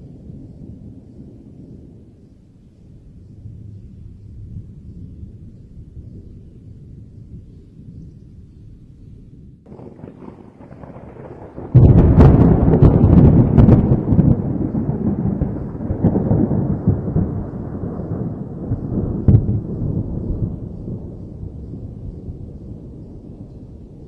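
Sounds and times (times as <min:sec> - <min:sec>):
low thunder rumble: 0:00.0 - 0:24.0
thunderclap crackling: 0:09.7 - 0:24.0.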